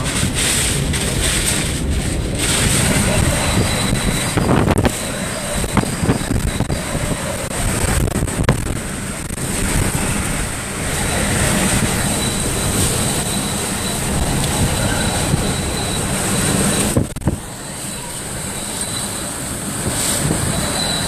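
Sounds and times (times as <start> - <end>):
hurricane wind rushing: 0.0 - 21.0.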